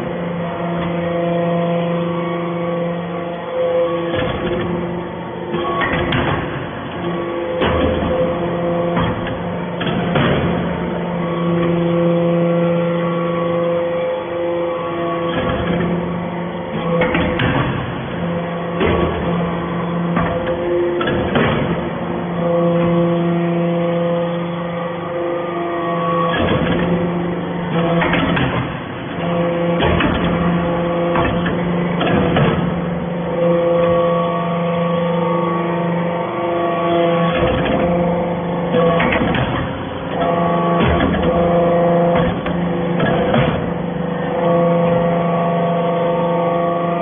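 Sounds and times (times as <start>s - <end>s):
baler motor humming: 0.0s - 47.0s.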